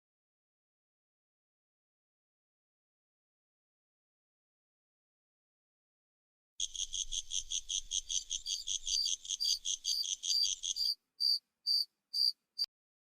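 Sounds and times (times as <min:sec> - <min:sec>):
crickets chirping: 0:06.6 - 0:12.4.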